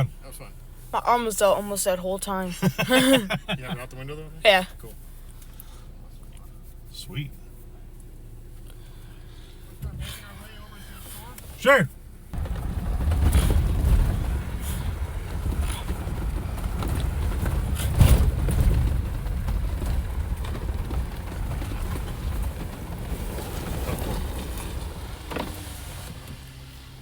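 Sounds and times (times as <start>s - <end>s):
off-road vehicle engine rumble: 0.0s - 27.0s
vehicle knocks and jolts: 12.3s - 27.0s.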